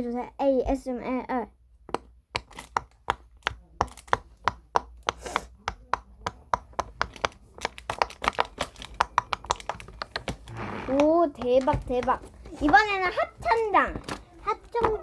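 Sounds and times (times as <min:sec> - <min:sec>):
silicone fidget toy popping: 0:01.9 - 0:12.2.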